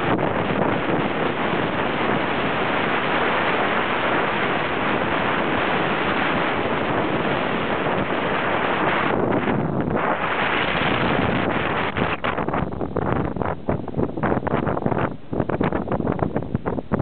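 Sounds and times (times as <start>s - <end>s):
surf rushing: 0.0s - 13.8s
wind blowing across microphone: 0.0s - 17.0s.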